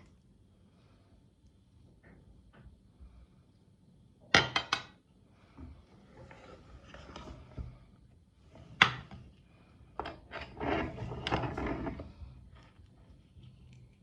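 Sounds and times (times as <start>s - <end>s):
scraping: 10.0s - 13.0s.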